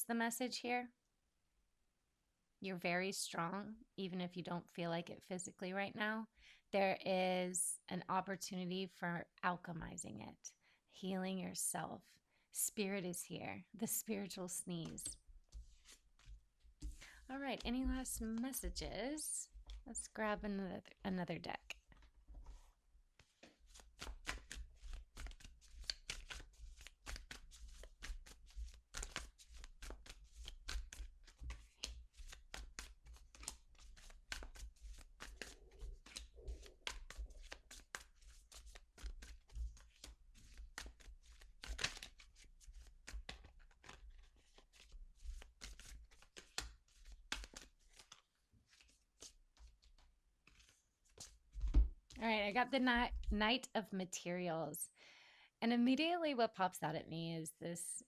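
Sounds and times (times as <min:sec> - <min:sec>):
cards being shuffled: 0:14.3 - 0:18.7, 0:21.7 - 0:52.2.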